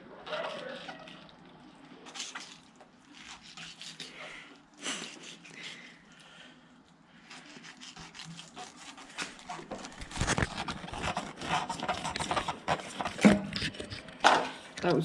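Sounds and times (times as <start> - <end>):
knife scraping along fish: 2.0 - 6.0, 7.2 - 14.2.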